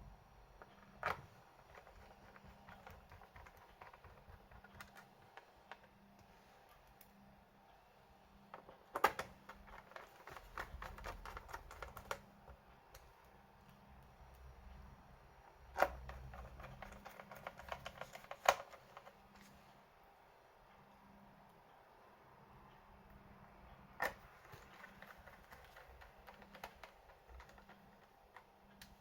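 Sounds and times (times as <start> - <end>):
computer keyboard typing: 0.6 - 6.0, 8.5 - 13.1, 15.6 - 19.3, 24.0 - 29.0.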